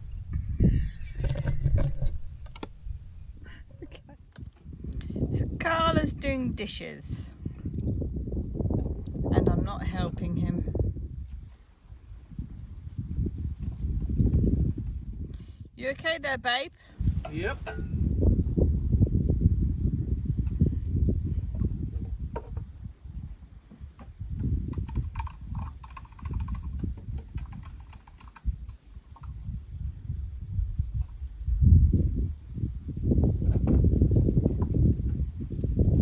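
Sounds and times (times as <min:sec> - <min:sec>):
low rumbling noise: 0:00.0 - 0:06.2
insect chorus drone: 0:00.0 - 0:36.0.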